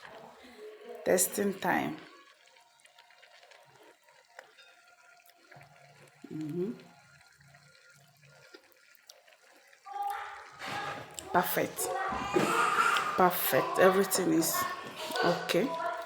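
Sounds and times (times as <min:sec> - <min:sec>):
person saying mmm: 0:06.3 - 0:06.8.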